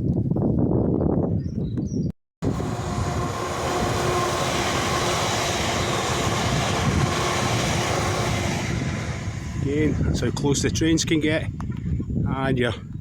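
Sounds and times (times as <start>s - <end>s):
train rushing past: 2.4s - 11.4s.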